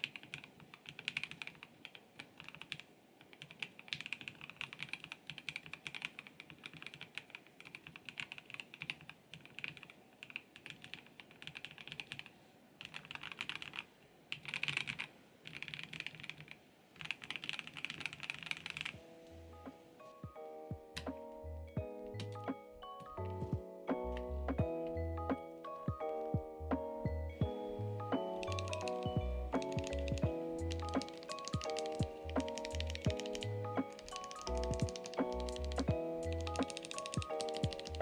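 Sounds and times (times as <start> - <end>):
mechanical keyboard typing: 0.0 - 19.0, 27.4 - 38.0.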